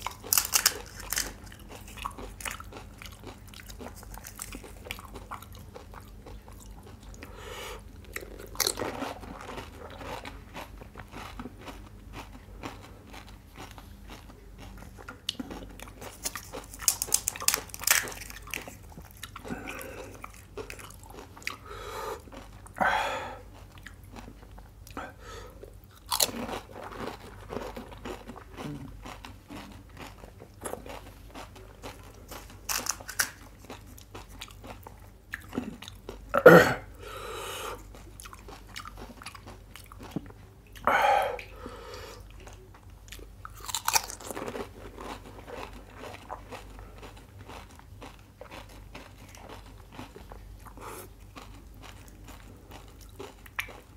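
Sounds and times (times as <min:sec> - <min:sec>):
crisp shells crunching: 0:00.0 - 0:05.3, 0:15.9 - 0:18.9, 0:31.8 - 0:34.8, 0:43.6 - 0:50.4
soft chewing: 0:00.0 - 0:53.9.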